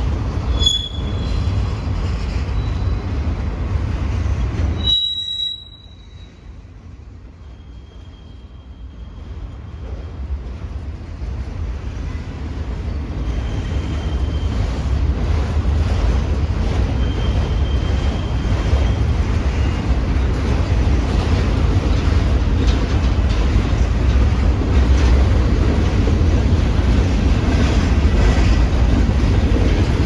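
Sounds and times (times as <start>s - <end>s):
train wheel squeal: 0.0s - 3.4s, 4.7s - 10.4s, 12.0s - 20.1s
freight train rumbling past: 0.0s - 30.0s.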